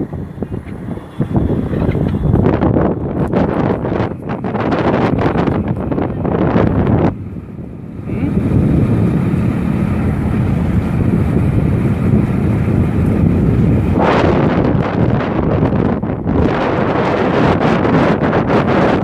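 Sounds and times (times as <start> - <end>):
engine humming: 0.0 - 19.0
wind buffeting microphone: 0.0 - 19.0.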